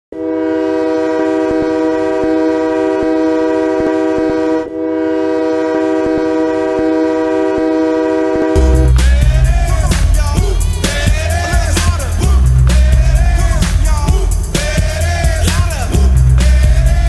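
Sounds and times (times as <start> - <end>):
ice hockey goal horn blowing: 0.1 - 8.9
pop music: 8.6 - 17.0.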